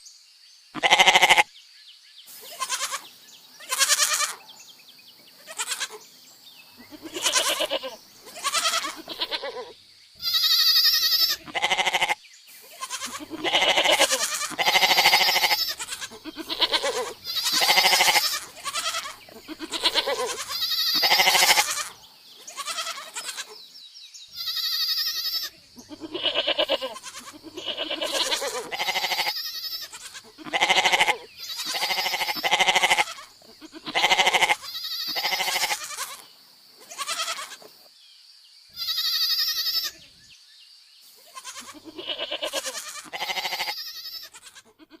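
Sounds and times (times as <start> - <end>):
goats bleating: 0.8 - 1.5, 2.4 - 4.4, 5.4 - 6.0, 6.8 - 23.6, 24.4 - 36.2, 36.8 - 37.7, 38.8 - 40.0, 41.3 - 45.0.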